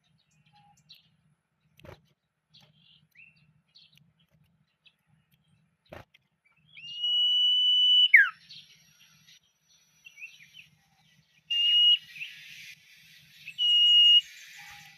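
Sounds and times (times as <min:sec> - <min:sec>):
bird chirps: 0:00.0 - 0:14.9
bird whistling: 0:06.7 - 0:10.7, 0:11.5 - 0:14.9.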